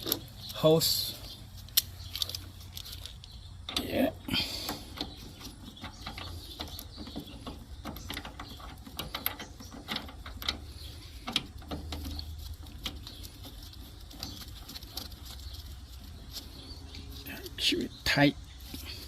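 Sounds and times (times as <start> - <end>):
metallic clicks of hose fitting: 1.6 - 15.4.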